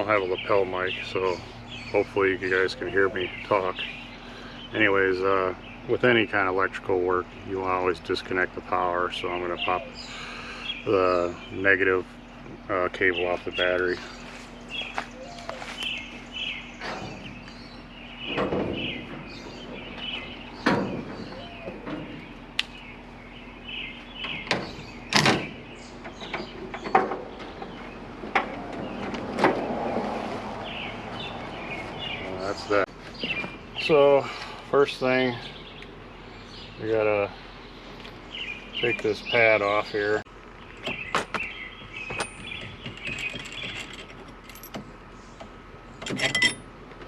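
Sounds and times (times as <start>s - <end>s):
birds chirping: 0.0s - 46.9s
light metallic clicks and jangling: 42.2s - 44.8s.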